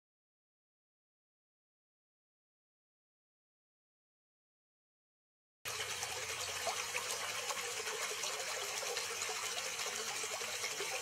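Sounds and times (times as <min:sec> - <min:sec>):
running water splashing: 0:05.7 - 0:11.0.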